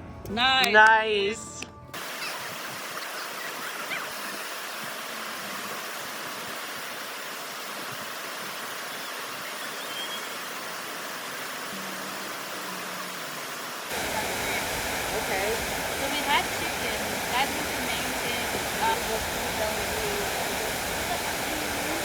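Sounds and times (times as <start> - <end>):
waterfall rushing: 13.9 - 22.0.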